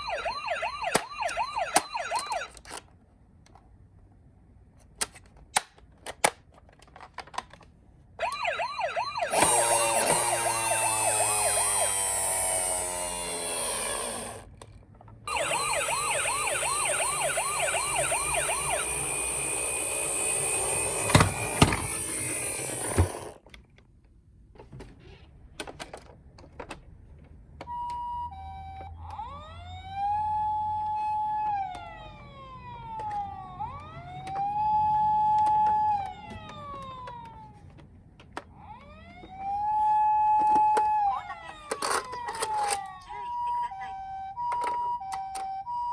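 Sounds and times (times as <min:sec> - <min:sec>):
slower rising and falling siren: 0:00.0 - 0:02.6, 0:08.2 - 0:14.4, 0:15.3 - 0:22.9, 0:27.7 - 0:37.6, 0:38.6 - 0:45.9
toy electronic siren: 0:00.0 - 0:02.6, 0:08.2 - 0:14.5, 0:15.3 - 0:23.4, 0:27.7 - 0:37.7, 0:38.5 - 0:45.9.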